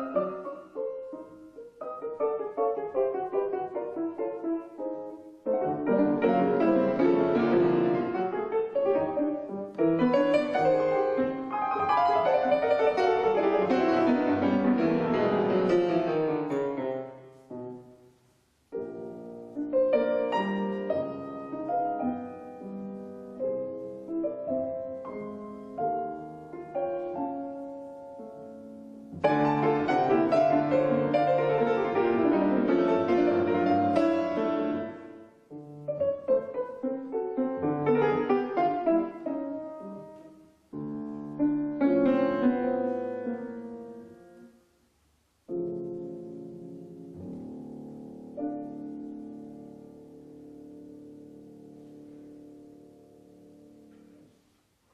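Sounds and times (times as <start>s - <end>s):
solo piano music: 0.0s - 54.9s.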